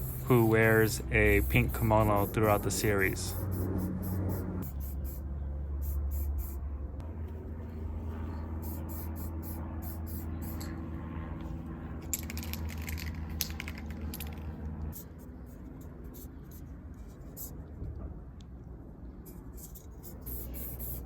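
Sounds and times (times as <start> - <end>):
spray paint hiss: 0.0 - 5.2, 8.6 - 10.6, 19.6 - 21.0
steady low hum: 0.0 - 21.0
spray can ball rattling: 12.1 - 14.5.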